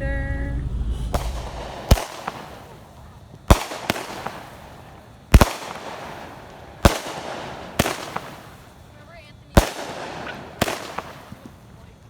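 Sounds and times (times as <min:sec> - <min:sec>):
fireworks bangs: 0:00.0 - 0:12.0.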